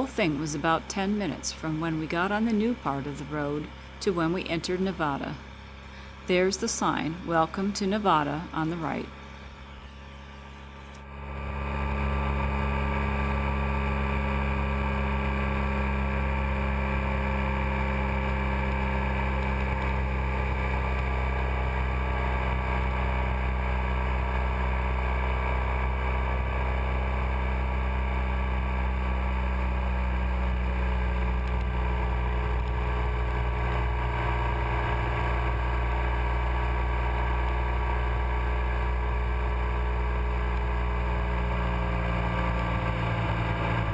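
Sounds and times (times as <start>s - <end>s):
motorcycle engine running steadily: 9.2s - 43.9s.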